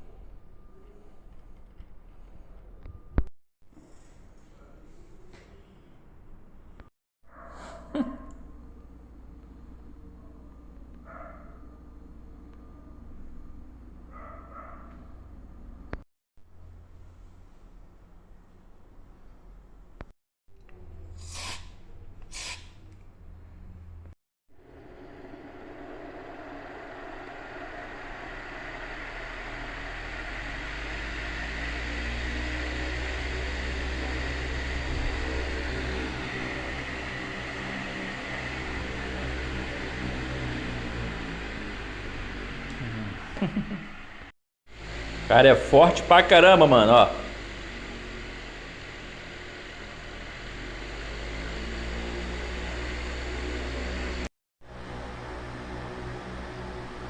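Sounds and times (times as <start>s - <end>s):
low motor hum: 7.3s - 57.0s
electric fan running: 24.6s - 57.0s.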